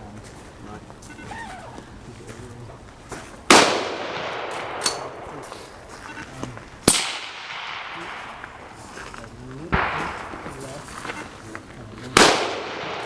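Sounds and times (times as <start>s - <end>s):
rifle shots with echo: 3.5s - 5.5s, 6.8s - 8.8s, 9.7s - 10.8s, 12.1s - 13.0s.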